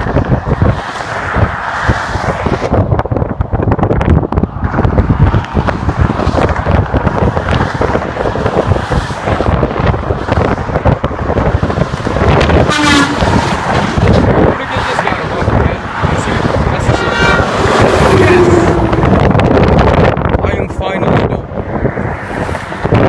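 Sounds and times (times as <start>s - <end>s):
highway traffic passing: 0.0s - 23.0s
wind buffeting microphone: 0.0s - 23.0s
vehicle horn blast: 12.7s - 13.4s, 16.9s - 19.1s.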